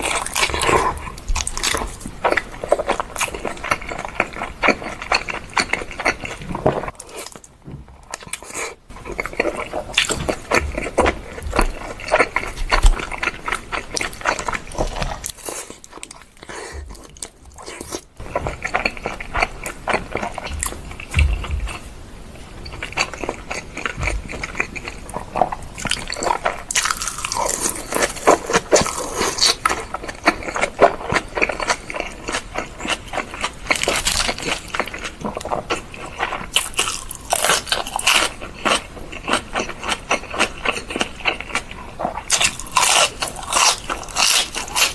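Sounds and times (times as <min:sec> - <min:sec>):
crunchy bites and chewing: 0:22.9 - 0:44.9.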